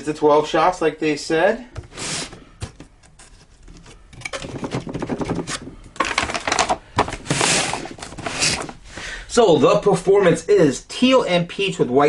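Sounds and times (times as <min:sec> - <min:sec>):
cardboard rustling: 0:01.8 - 0:09.1.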